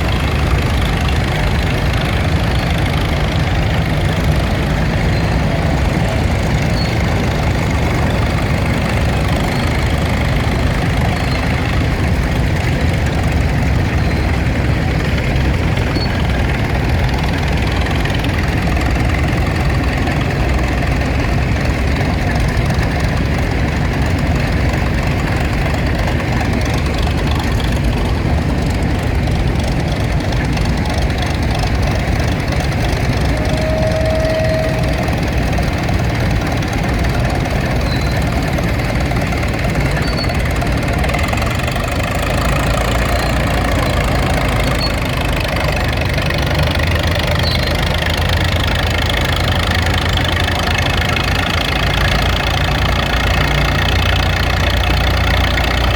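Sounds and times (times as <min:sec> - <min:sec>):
tractor engines rumbling: 0:00.0 - 0:55.9
short steady tone: 0:33.3 - 0:35.8.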